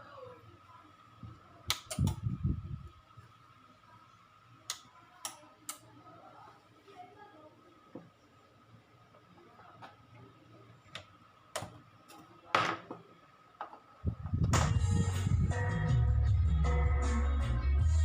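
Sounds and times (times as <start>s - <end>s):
low rumble: 14.1s - 18.0s.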